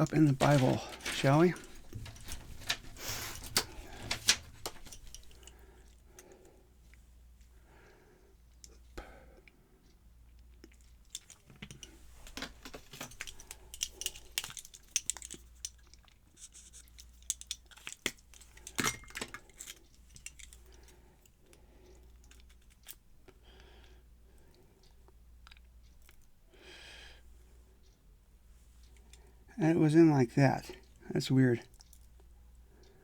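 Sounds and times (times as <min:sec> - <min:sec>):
small metal lock parts clicking: 0:00.0 - 0:05.6, 0:10.9 - 0:20.9, 0:22.1 - 0:23.0
soft handling noise: 0:00.0 - 0:07.5, 0:10.4 - 0:21.4.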